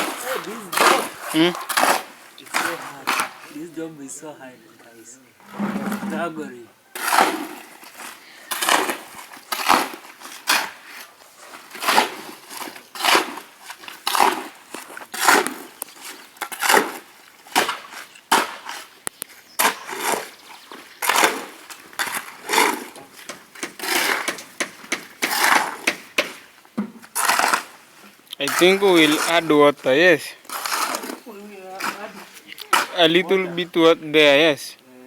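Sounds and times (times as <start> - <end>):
hand tool scraping cement mortar: 0.0 - 3.9, 5.4 - 19.0, 19.6 - 34.5.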